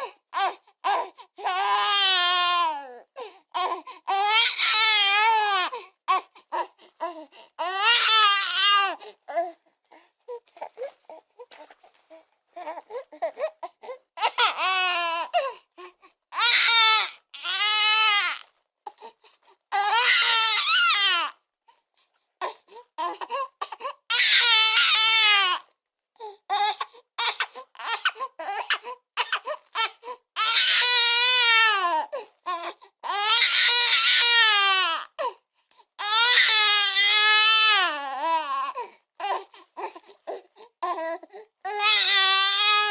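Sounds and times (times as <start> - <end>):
baby crying: 0.0 - 9.6, 10.3 - 19.0, 19.7 - 21.4, 22.4 - 25.7, 26.5 - 35.4, 36.0 - 42.9
baby gasping breaths: 9.0 - 14.0, 18.9 - 19.7, 38.7 - 41.6.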